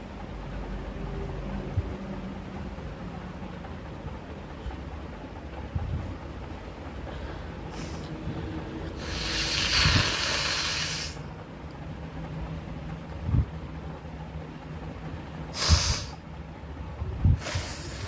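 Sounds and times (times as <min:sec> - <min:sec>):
person blowing nose: 0:09.0 - 0:11.2, 0:15.6 - 0:16.2.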